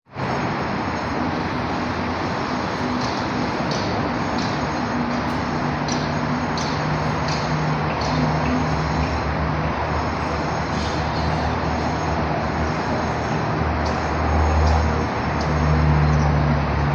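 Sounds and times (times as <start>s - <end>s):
drone of engines and machinery: 0.1s - 16.9s
traffic noise: 0.1s - 16.9s.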